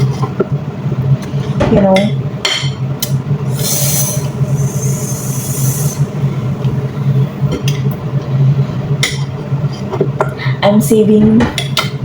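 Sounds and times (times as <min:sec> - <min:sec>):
low mechanical hum: 0:00.0 - 0:12.0
hiss: 0:03.5 - 0:06.8.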